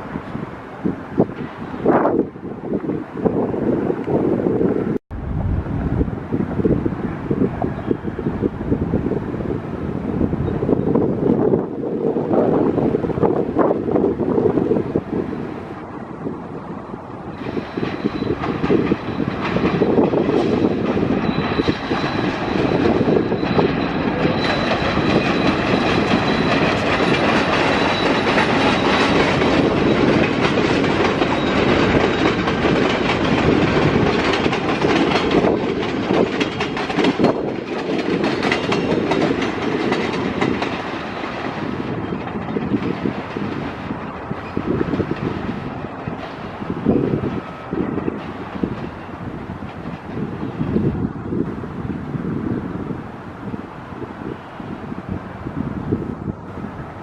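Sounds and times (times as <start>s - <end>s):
train wheels clattering on rails: 17.4s - 51.2s.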